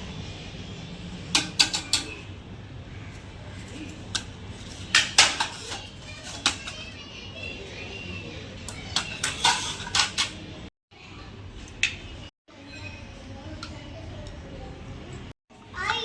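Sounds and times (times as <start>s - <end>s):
clicks and knocks of hard objects: 1.4s - 2.2s, 3.1s - 7.0s, 8.7s - 10.4s.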